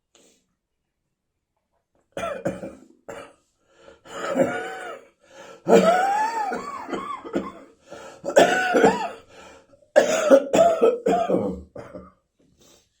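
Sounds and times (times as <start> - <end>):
person coughing: 2.2 - 3.3, 4.1 - 9.3, 10.0 - 12.1.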